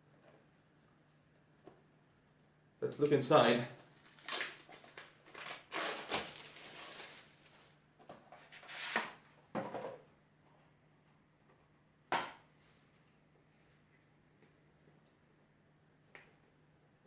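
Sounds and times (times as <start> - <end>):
box contents rustling: 4.0 - 7.8.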